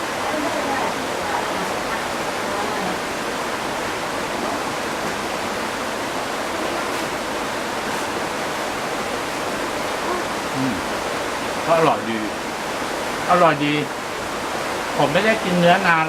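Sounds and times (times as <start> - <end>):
waterfall roaring: 0.0 - 16.0.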